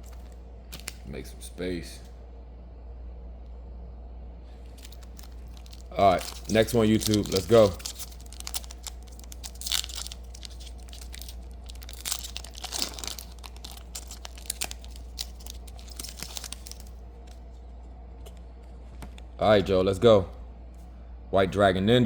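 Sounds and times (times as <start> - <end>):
steady low hum: 0.0 - 22.0
foil wrapper tearing and crinkling: 4.7 - 17.0.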